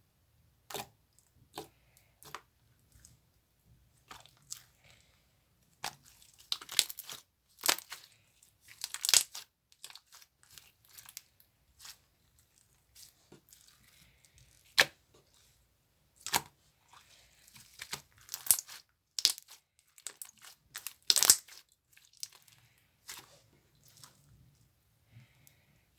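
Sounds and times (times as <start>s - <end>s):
slime squished by hand: 5.8s - 12.0s, 17.3s - 24.2s.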